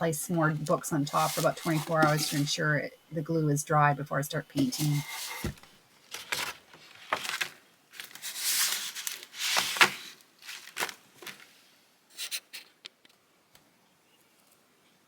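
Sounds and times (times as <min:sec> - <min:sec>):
bark crinkling and scraping: 0:00.6 - 0:02.5, 0:04.6 - 0:05.6.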